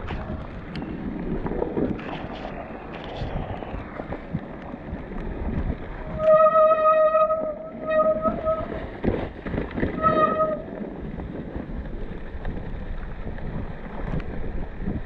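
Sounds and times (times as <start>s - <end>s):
low rumbling noise: 0.0s - 15.0s
steady squeal: 6.0s - 8.8s, 9.9s - 10.7s.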